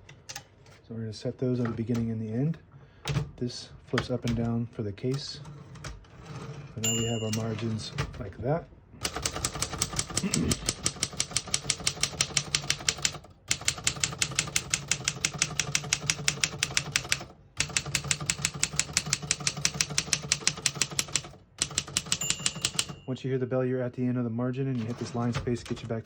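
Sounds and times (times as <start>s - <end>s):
typewriter keystrokes: 9.0s - 23.0s.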